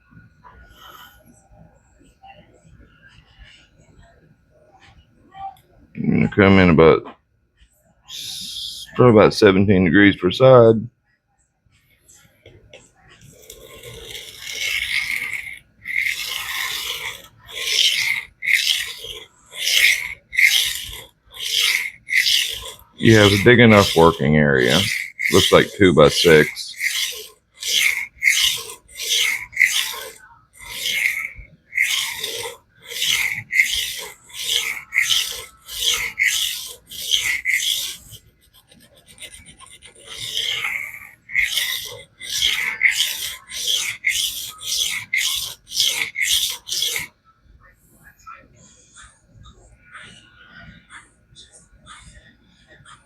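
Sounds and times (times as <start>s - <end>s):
blade rasping on sharpening plate: 13.2s - 47.1s.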